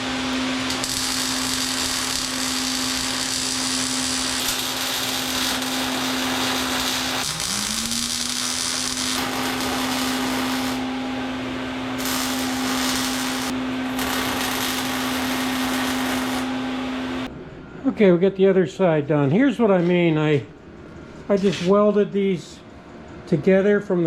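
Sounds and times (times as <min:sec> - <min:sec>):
angle grinder on steel: 0:00.7 - 0:10.9, 0:12.0 - 0:16.6.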